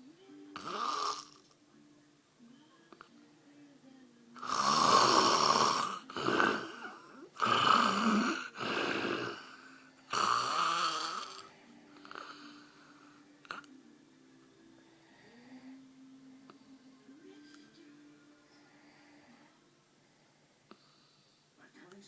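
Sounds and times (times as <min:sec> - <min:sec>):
man snoring loudly: 0:00.6 - 0:01.4, 0:04.4 - 0:12.9.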